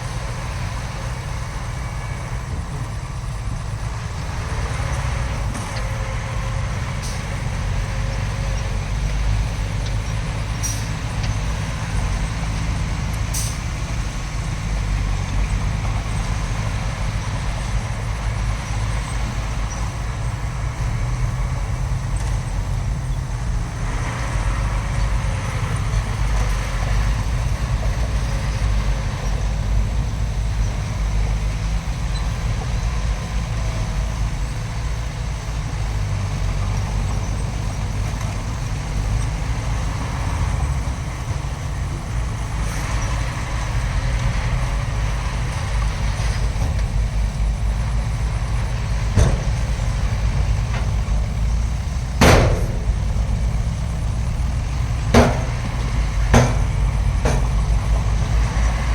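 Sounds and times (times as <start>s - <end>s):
diesel machinery rumbling: 0.0s - 58.9s
sharp ringing knocks: 52.2s - 58.2s.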